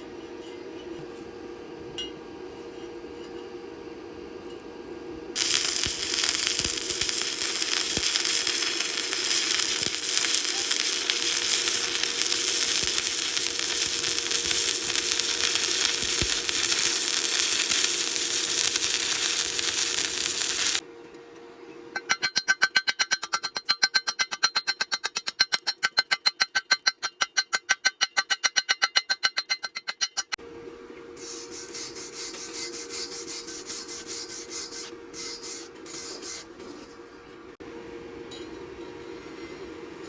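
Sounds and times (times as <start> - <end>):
welding arc crackling and hissing: 5.4 - 20.8, 31.2 - 36.5.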